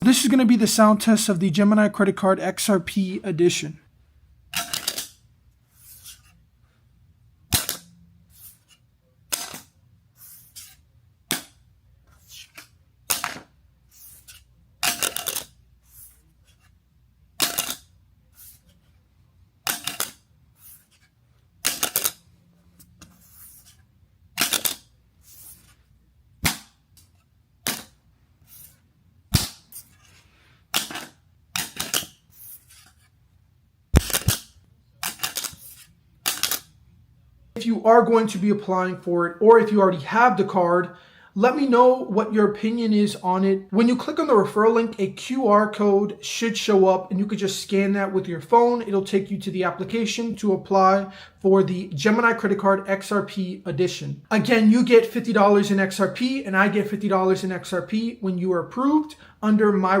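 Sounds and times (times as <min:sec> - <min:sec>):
metal card clinking on hard surface: 0:14.0 - 0:16.6, 0:17.4 - 0:18.6, 0:19.7 - 0:21.0, 0:24.4 - 0:25.6, 0:34.0 - 0:36.7.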